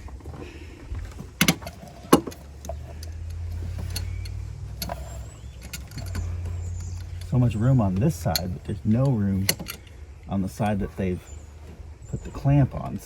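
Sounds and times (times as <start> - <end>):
steady low rumble: 0.0 - 13.0
hand tools clicking on metal: 1.0 - 11.0.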